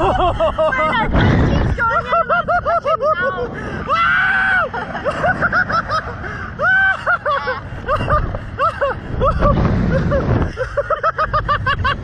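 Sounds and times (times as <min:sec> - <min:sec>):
wind buffeting microphone: 0:00.0 - 0:12.0
person laughing and squealing: 0:01.7 - 0:12.0.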